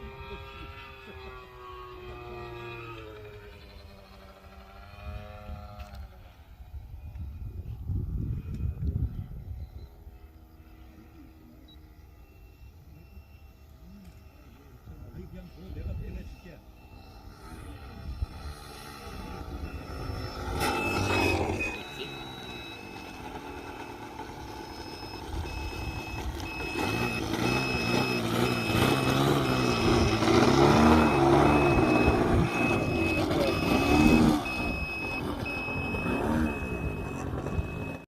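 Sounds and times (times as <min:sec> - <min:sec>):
model plane engine passing: 0:00.0 - 0:38.0
high electronic beeps: 0:11.6 - 0:38.0.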